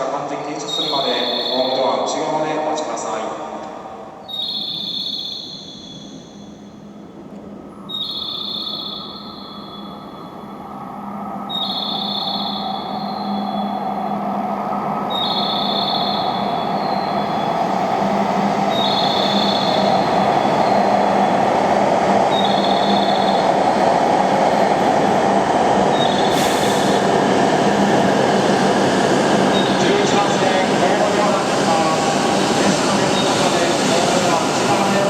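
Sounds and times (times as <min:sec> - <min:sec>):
train running and braking: 0:00.0 - 0:35.0
air hiss: 0:26.3 - 0:27.1.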